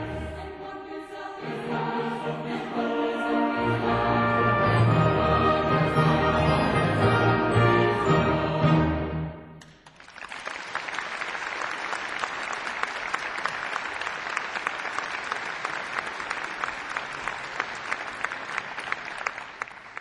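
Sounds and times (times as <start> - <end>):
choir and string orchestra chord: 0.0 - 9.6
audience applauding: 9.6 - 20.0.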